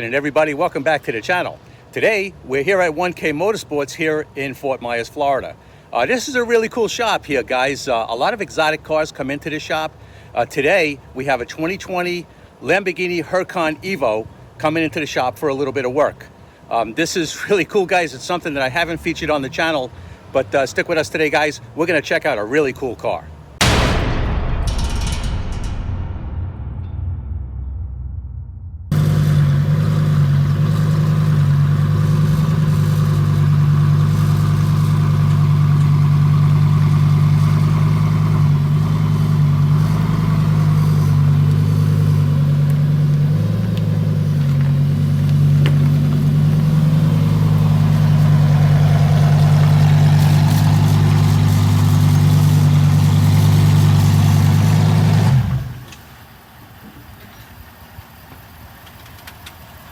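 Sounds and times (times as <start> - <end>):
quiet engine hum: 27.3 - 54.1
sports car engine running at low revs: 28.9 - 55.8.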